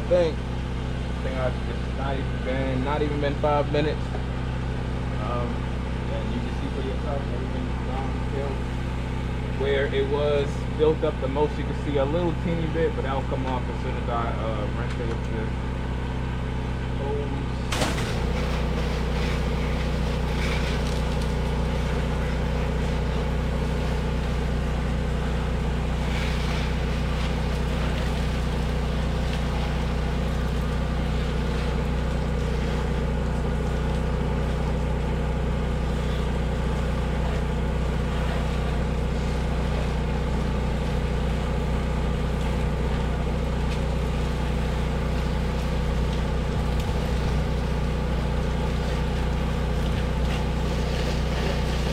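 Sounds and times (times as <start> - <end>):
small gas engine running: 0.0 - 51.9
water spraying from hose: 17.7 - 51.9.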